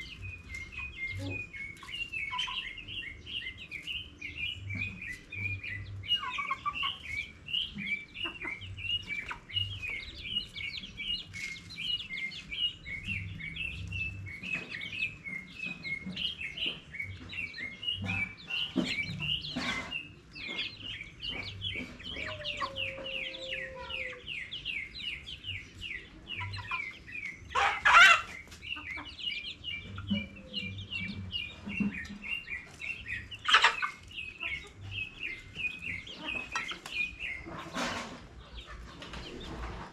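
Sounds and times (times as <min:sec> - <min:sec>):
chickens chirping and clucking: 0:00.0 - 0:39.9
chicken squawk: 0:22.1 - 0:24.3, 0:27.5 - 0:28.4.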